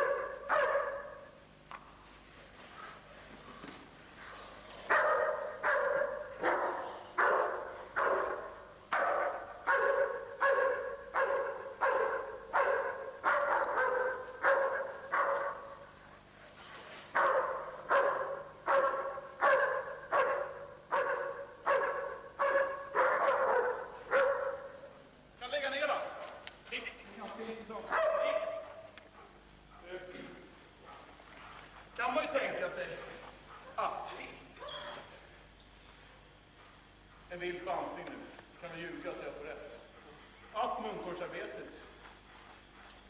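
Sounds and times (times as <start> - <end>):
dog barking: 0.0 - 1.4, 4.9 - 16.3, 17.1 - 25.0, 27.8 - 30.0, 30.8 - 31.6.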